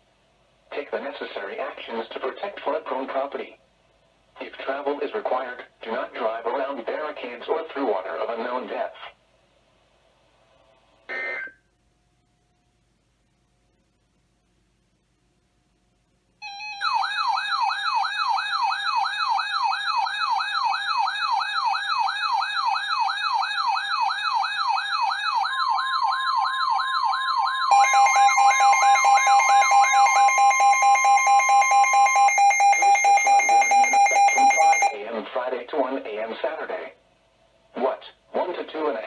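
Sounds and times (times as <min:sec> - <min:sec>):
fast warbling siren: 0:16.4 - 0:35.0
steady alarm tone: 0:16.4 - 0:35.0
rapid pulsing alarm beeps: 0:25.2 - 0:35.0.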